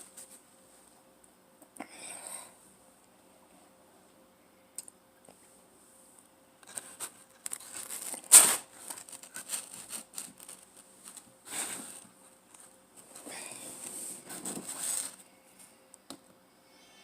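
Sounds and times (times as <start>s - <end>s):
small clicks and rustling: 6.6s - 12.6s.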